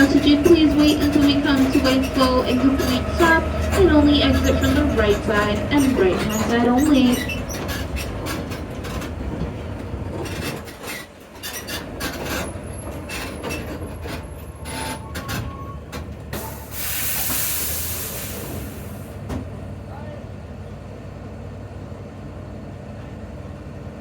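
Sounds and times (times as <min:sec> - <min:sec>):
brake squeals: 0:00.0 - 0:09.1, 0:10.1 - 0:19.3
tram rumbling and rattling: 0:00.0 - 0:24.0
air hiss: 0:16.4 - 0:19.2.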